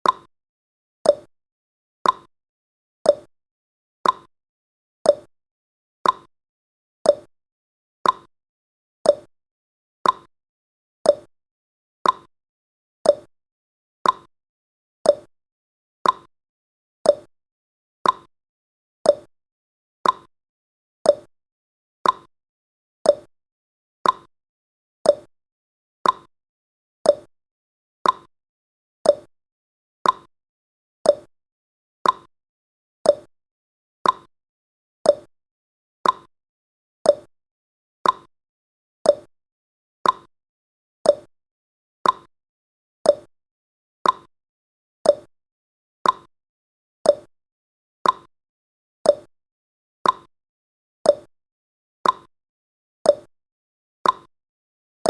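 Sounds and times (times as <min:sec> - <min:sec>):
clock ticking: 0:34.0 - 0:34.3, 0:36.0 - 0:36.3, 0:40.0 - 0:40.3, 0:42.0 - 0:42.3, 0:46.0 - 0:46.3, 0:48.0 - 0:48.3.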